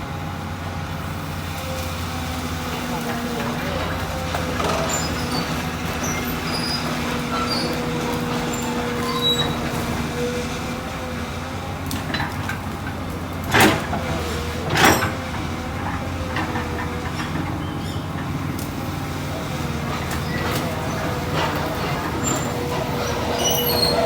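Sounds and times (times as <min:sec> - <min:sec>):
excavator diesel engine running: 0:00.0 - 0:24.0.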